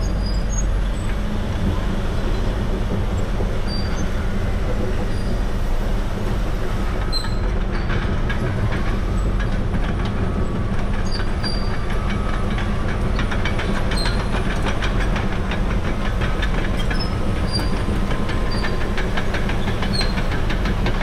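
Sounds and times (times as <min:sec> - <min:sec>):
diesel dozer engine running: 0:00.0 - 0:21.0
steel tracks clanking: 0:00.0 - 0:21.0
high track squeaks: 0:06.9 - 0:21.0.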